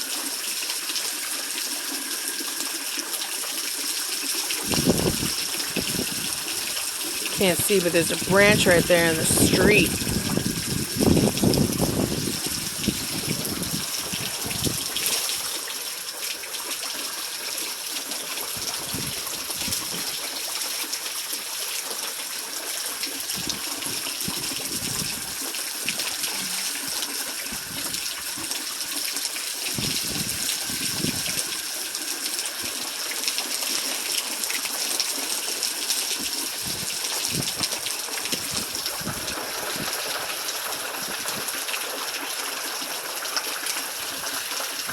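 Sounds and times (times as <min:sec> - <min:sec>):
wind buffeting microphone: 0:04.6 - 0:06.4, 0:09.4 - 0:15.0, 0:18.6 - 0:20.0, 0:24.2 - 0:25.4, 0:29.8 - 0:31.5, 0:36.6 - 0:40.2
heavy rain falling: 0:07.1 - 0:15.3.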